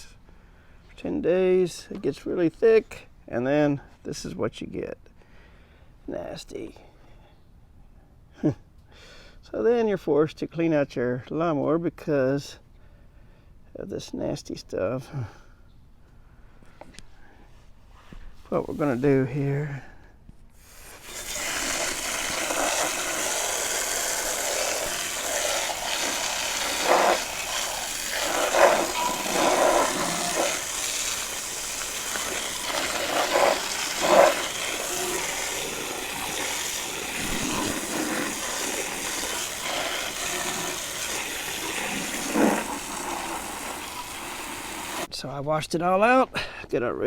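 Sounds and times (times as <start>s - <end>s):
garden hose spraying water: 20.6s - 45.1s.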